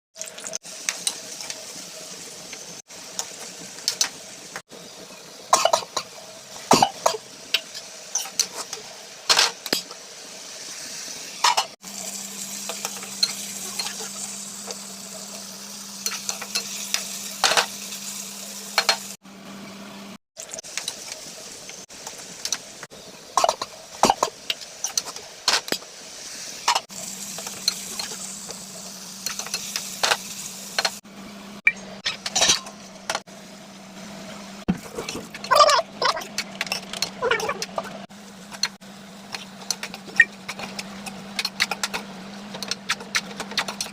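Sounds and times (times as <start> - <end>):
food sizzling in a pan: 0.2 - 31.0.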